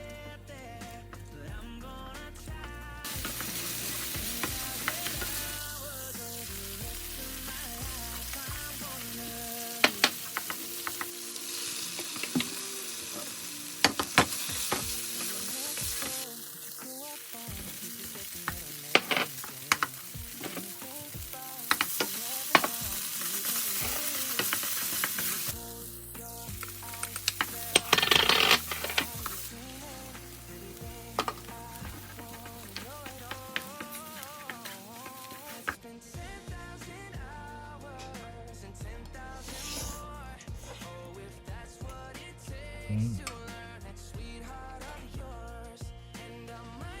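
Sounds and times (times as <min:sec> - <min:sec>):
light background music: 0:00.0 - 0:47.0
food sizzling in a pan: 0:03.0 - 0:37.3, 0:39.1 - 0:41.6.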